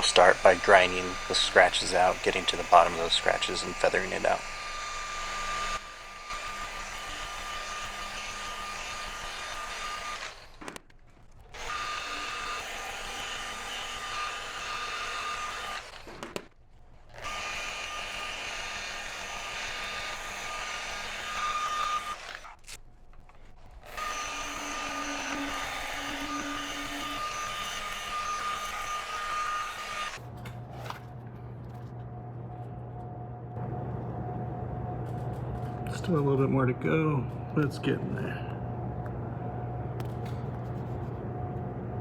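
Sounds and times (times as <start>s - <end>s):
electric grinder on glass: 0.0s - 10.8s, 11.4s - 22.8s, 23.8s - 30.2s.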